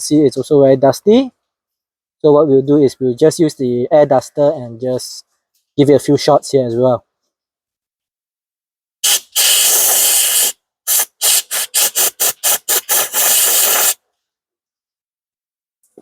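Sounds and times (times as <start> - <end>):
compressed air spraying: 9.0 - 14.0.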